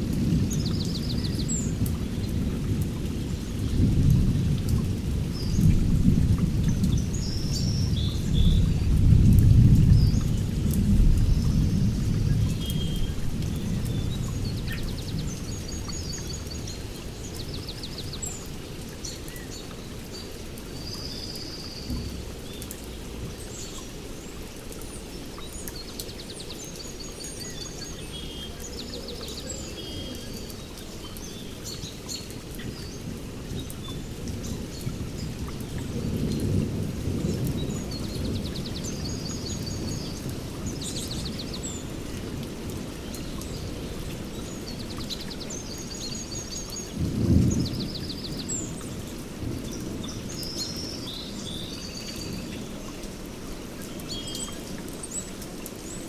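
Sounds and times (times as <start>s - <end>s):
low rolling thunder: 0.0s - 16.7s, 32.7s - 41.3s, 46.9s - 50.3s
steady rain: 0.0s - 56.0s.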